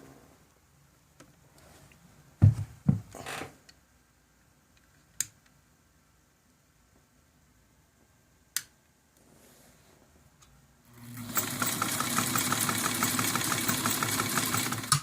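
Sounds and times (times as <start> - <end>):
sewing machine clatter: 11.0 - 15.0.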